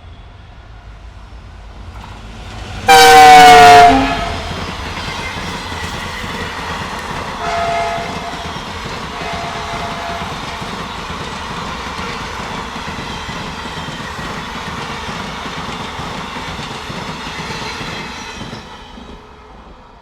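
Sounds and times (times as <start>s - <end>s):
train wheels clattering over rail joints: 4.4s - 19.2s.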